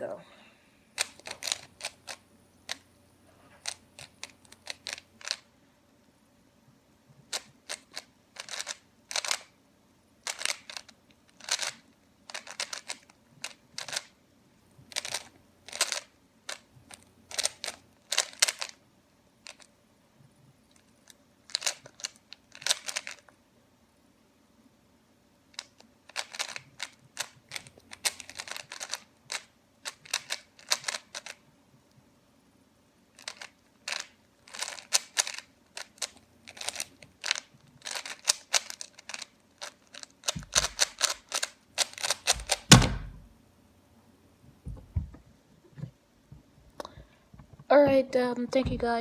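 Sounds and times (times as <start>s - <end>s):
plastic puzzle cube clicking: 1.0s - 2.8s, 3.6s - 5.4s, 7.3s - 9.5s, 10.2s - 14.2s, 14.9s - 18.8s, 19.4s - 19.7s, 20.7s - 23.3s, 25.6s - 31.4s, 33.2s - 43.2s.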